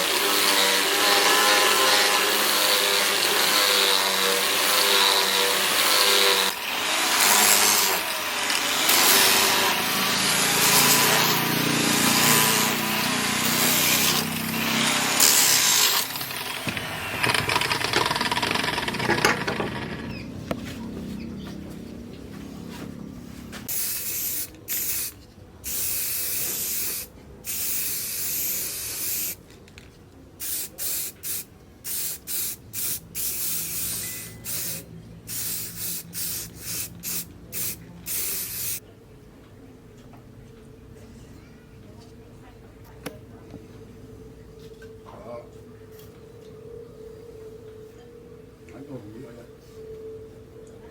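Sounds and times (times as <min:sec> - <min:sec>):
power tool grinding: 0:00.0 - 0:20.2
short hissing sprays: 0:23.7 - 0:25.1, 0:25.7 - 0:29.4, 0:30.4 - 0:38.8.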